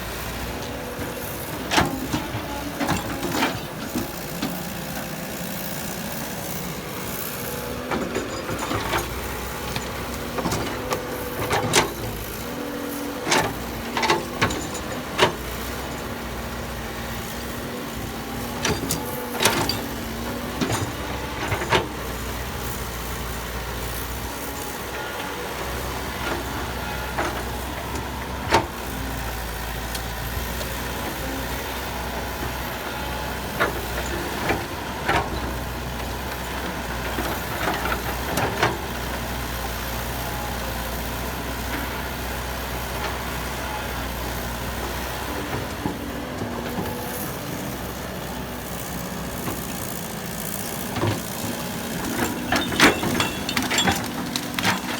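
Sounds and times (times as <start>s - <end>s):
machinery knocks and clanks: 50.4s - 54.9s.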